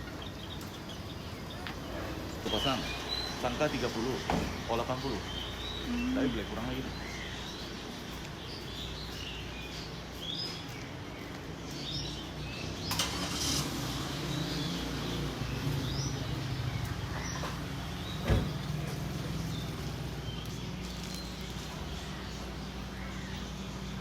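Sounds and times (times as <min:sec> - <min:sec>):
caged birds chirping: 0:00.0 - 0:24.0.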